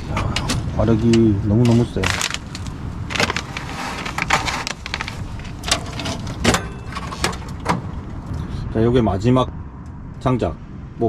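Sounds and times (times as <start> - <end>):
firewood logs being split: 1.6 - 7.6.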